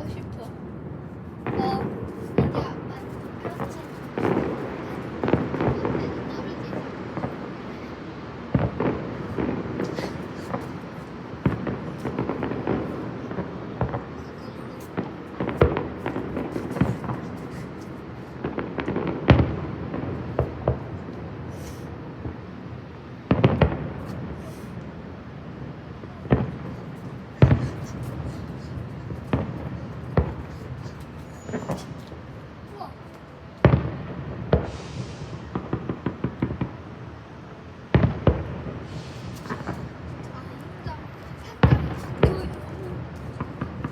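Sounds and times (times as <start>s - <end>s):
fireworks bangs: 0.0s - 43.9s.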